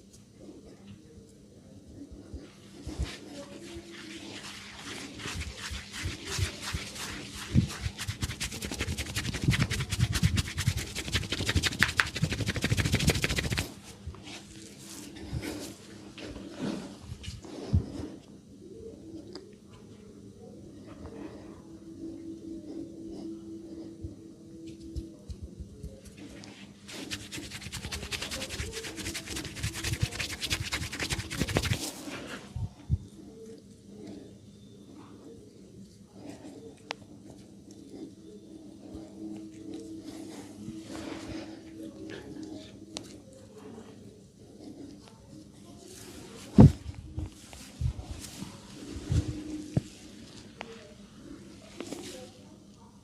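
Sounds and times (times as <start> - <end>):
hands patting hair: 2.8 - 15.7, 24.8 - 32.4.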